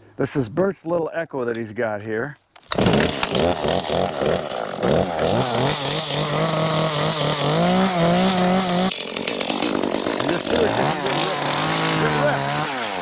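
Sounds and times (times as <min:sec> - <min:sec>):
chainsaw revving: 0:02.6 - 0:13.0.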